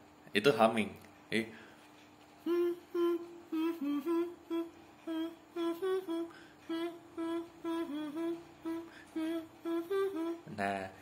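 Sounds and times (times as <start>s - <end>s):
beatboxer humming rhythmic notes: 2.4s - 10.7s.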